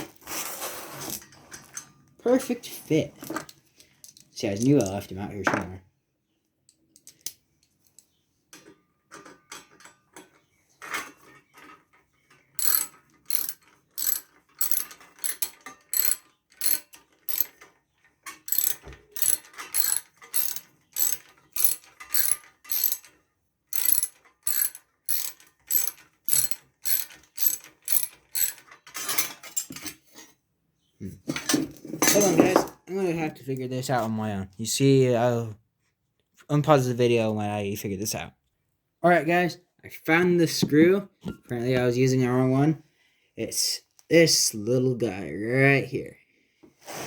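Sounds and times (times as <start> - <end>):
hand ratchet clicking: 12.6 - 17.6, 18.4 - 23.1, 23.7 - 28.7.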